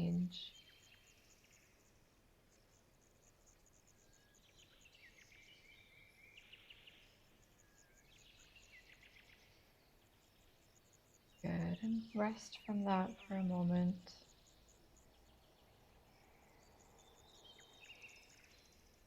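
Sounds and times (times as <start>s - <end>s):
birds calling and trilling: 2.6s - 19.0s
rapid high insect chirping: 14.2s - 19.0s.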